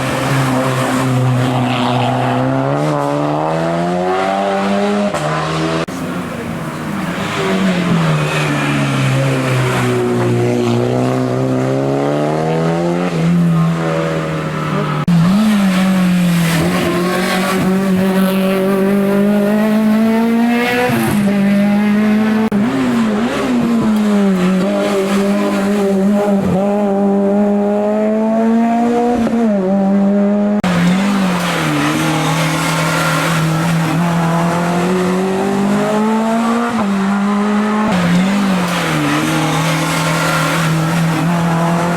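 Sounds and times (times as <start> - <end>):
race car engine at high revs: 0.0 - 41.9.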